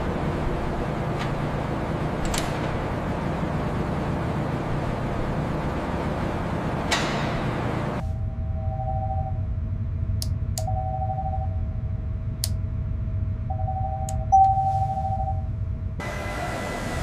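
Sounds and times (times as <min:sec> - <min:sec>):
low steady rumble: 0:00.0 - 0:17.0
sonar-style electronic tones: 0:08.0 - 0:12.4, 0:13.1 - 0:15.6.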